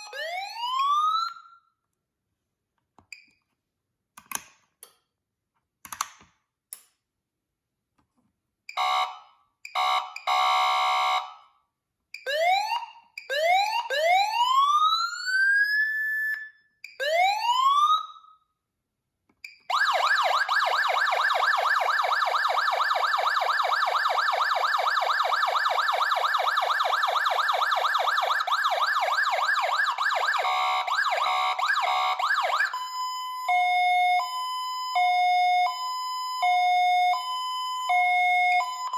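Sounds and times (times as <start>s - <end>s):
electronic siren wailing: 19.7s - 38.9s.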